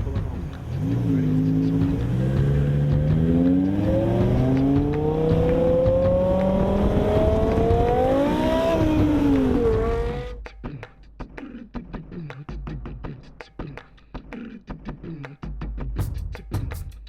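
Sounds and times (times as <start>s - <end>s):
car engine accelerating hard: 0.0s - 10.4s.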